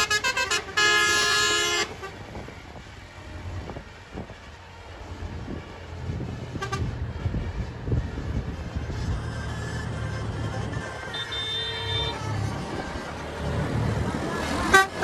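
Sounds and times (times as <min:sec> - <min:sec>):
multi-tone musical air horn: 0:00.0 - 0:02.2, 0:06.6 - 0:06.9, 0:11.1 - 0:12.2, 0:14.6 - 0:15.0
low engine rumble: 0:00.0 - 0:15.0.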